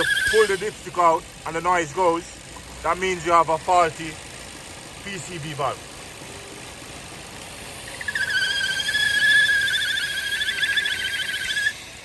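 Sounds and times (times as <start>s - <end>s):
engine high-pitched squealing whistle: 0.0s - 1.0s, 7.6s - 12.0s.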